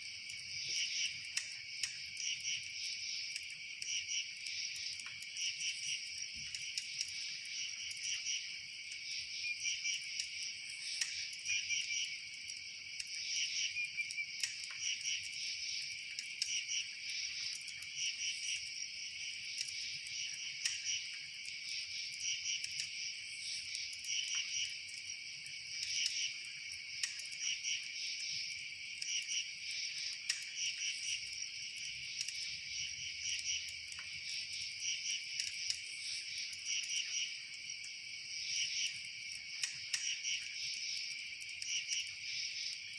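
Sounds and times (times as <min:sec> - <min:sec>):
insects chirping: 0:00.0 - 0:42.9
faint clicks: 0:00.3 - 0:02.1, 0:14.0 - 0:16.6, 0:19.5 - 0:28.4, 0:29.0 - 0:32.5, 0:33.2 - 0:38.0, 0:38.8 - 0:42.8.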